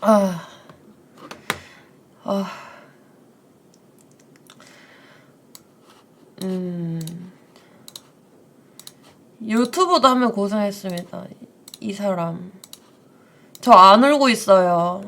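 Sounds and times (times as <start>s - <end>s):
sharp clicks: 7.9s - 8.1s, 8.8s - 9.0s, 10.9s - 11.8s, 12.6s - 12.9s.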